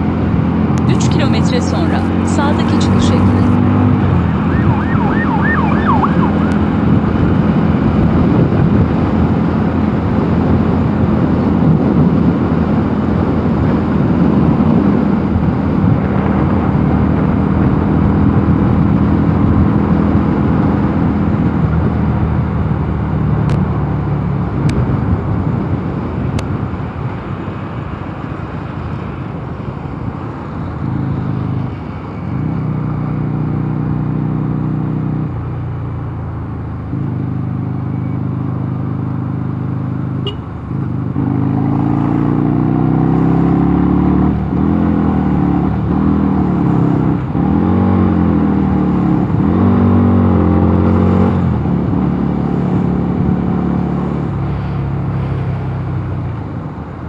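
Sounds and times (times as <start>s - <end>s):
motorcycle engine running: 0.0s - 9.9s
wind rush on microphone: 0.0s - 33.7s.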